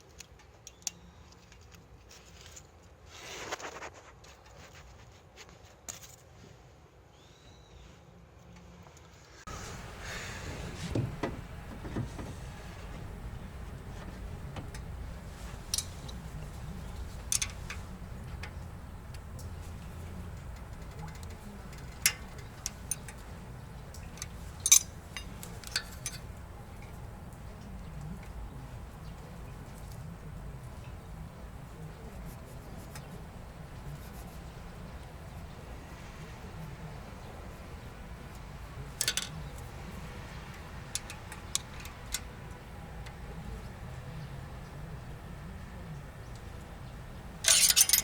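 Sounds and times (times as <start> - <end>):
metallic clicks and clinks: 9.5 - 31.1, 39.0 - 39.7, 40.8 - 42.4, 47.4 - 48.0
low steady hum: 9.5 - 48.0.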